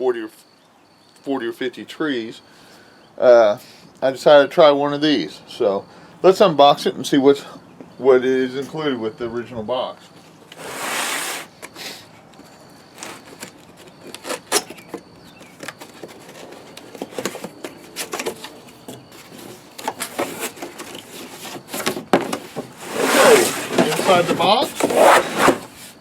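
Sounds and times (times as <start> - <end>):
cardboard rustling and scraping: 10.4 - 11.8, 12.8 - 26.0.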